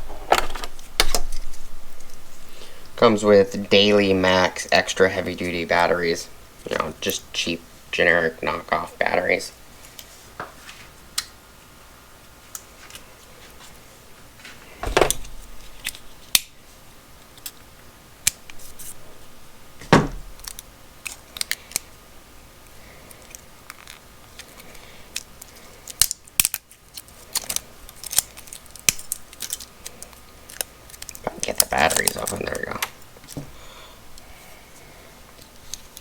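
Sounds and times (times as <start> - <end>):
heavier knocks: 14.8 - 15.6, 19.8 - 20.4.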